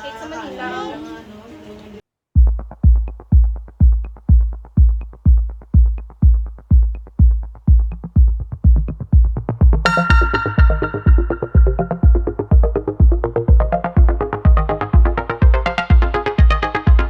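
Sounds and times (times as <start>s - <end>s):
deep kick drum: 2.4s - 17.0s
synthesizer melody: 7.8s - 17.0s.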